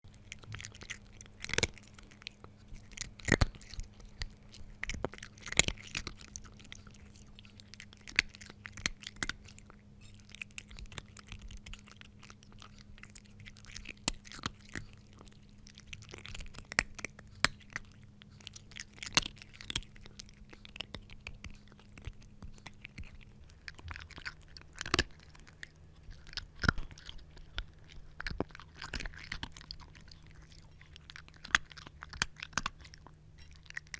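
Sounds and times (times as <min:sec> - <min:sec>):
faint low hum: 0:00.0 - 0:33.9
cat crunching dry kibble: 0:00.1 - 0:33.9.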